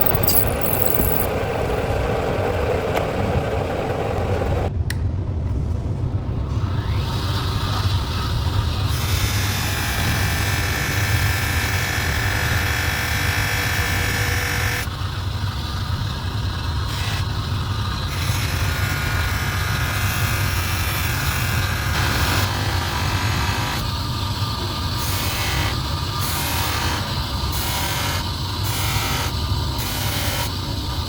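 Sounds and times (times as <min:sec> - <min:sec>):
electric motor humming and hissing: 0:06.8 - 0:31.0.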